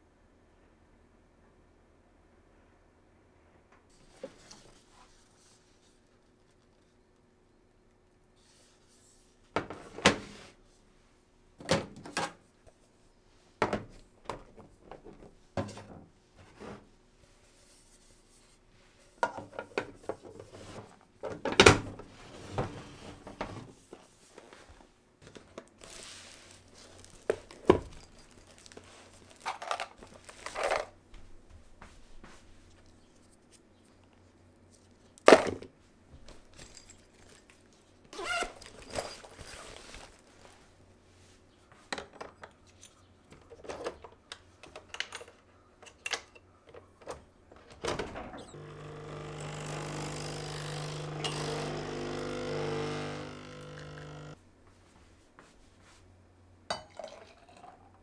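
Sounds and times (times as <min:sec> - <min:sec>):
soft rustling: 0:25.8 - 0:35.2.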